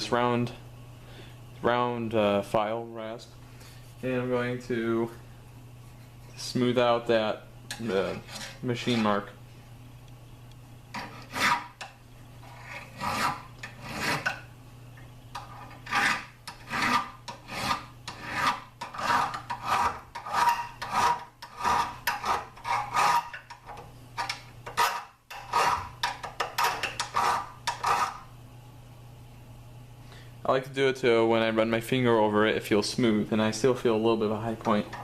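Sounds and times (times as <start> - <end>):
file rasping on metal: 7.8 - 9.1, 10.9 - 11.8, 12.4 - 14.4, 15.4 - 23.6, 24.3 - 28.3.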